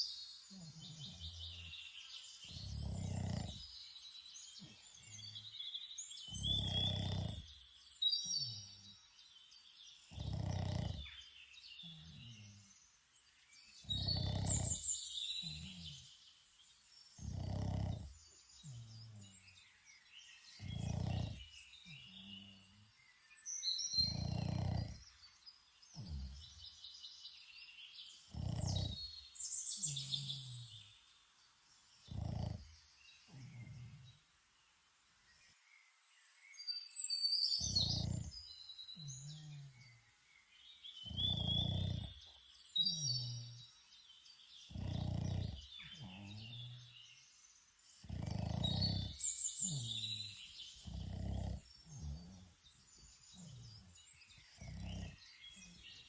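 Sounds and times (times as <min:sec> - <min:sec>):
dog snorting: 0:00.0 - 0:03.8, 0:06.2 - 0:08.9, 0:10.0 - 0:11.2, 0:13.8 - 0:16.2, 0:17.2 - 0:19.7, 0:20.6 - 0:22.8, 0:24.0 - 0:25.2, 0:25.9 - 0:26.8, 0:28.2 - 0:30.9, 0:32.0 - 0:34.2, 0:37.6 - 0:39.9, 0:41.0 - 0:43.6, 0:44.7 - 0:47.1, 0:48.0 - 0:56.0
dog snoring: 0:00.0 - 0:03.9, 0:04.5 - 0:05.6, 0:06.2 - 0:09.0, 0:10.0 - 0:12.9, 0:13.8 - 0:16.2, 0:17.2 - 0:23.0, 0:23.9 - 0:25.3, 0:25.9 - 0:26.8, 0:28.2 - 0:31.0, 0:32.0 - 0:34.2, 0:37.6 - 0:40.0, 0:41.0 - 0:43.7, 0:44.7 - 0:47.1, 0:47.9 - 0:56.0
birds chirping: 0:00.0 - 0:56.0.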